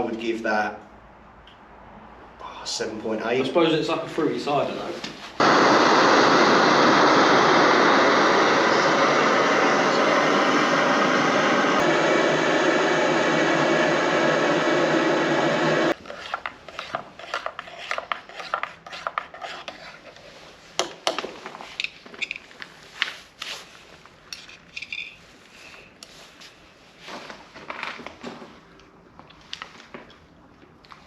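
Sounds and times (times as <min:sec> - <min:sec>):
loud rushing noise: 0:05.4 - 0:16.0.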